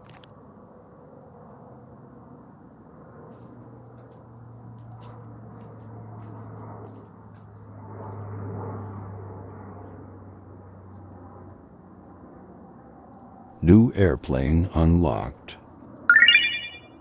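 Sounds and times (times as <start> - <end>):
turboprop plane passing overhead: 1.0 - 10.1.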